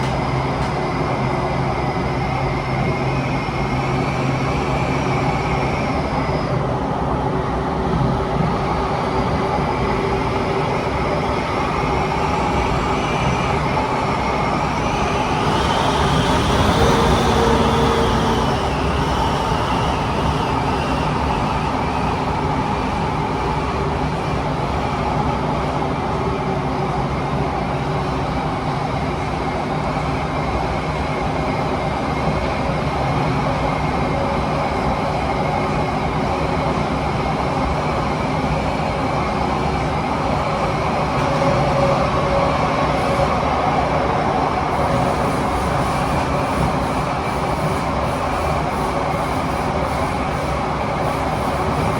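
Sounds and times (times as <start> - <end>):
wheel and track rumble: 0.0 - 25.2, 31.7 - 51.9
loud wind noise in tunnel: 0.0 - 51.9
train motor whine: 8.0 - 23.1.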